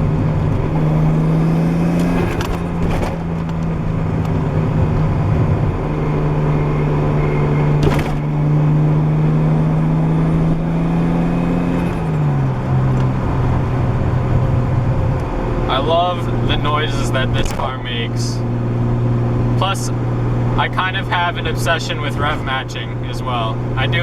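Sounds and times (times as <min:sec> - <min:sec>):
car engine running: 0:00.0 - 0:24.0.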